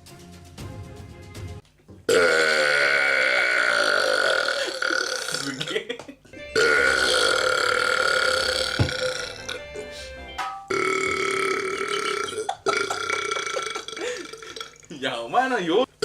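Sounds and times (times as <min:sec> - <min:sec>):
man burping: 0:02.1 - 0:05.9, 0:06.5 - 0:09.9, 0:10.7 - 0:15.0.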